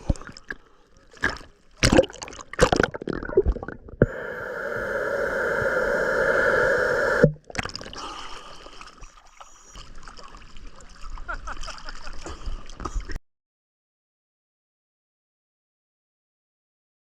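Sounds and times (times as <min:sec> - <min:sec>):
water rushing: 0:04.0 - 0:07.4.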